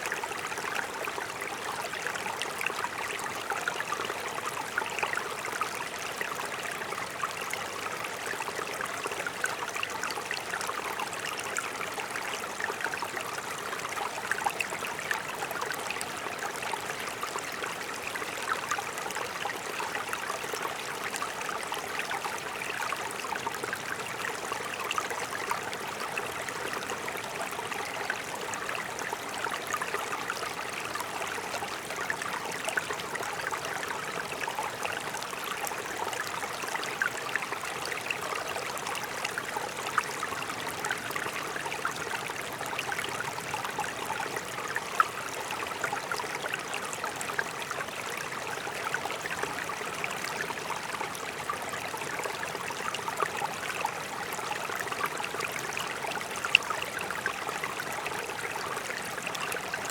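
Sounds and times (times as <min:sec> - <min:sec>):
stream running over rocks: 0:00.0 - 0:59.9.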